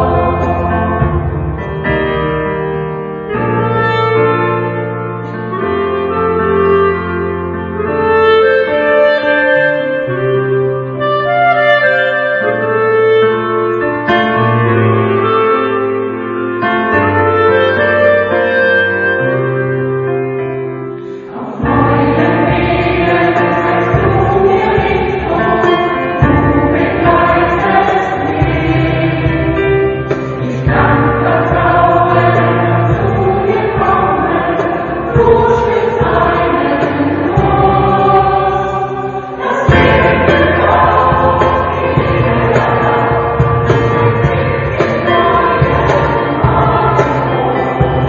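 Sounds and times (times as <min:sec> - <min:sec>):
choir singing: 0:00.0 - 0:02.2, 0:21.0 - 0:48.0.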